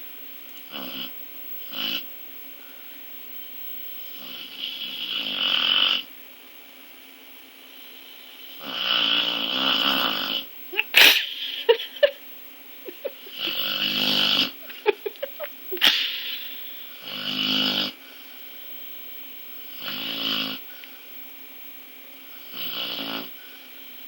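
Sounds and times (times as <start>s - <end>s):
dog snoring: 0.6s - 2.1s, 4.1s - 6.1s, 8.4s - 10.5s, 13.1s - 14.9s, 16.9s - 18.0s, 19.7s - 20.7s, 22.4s - 23.4s.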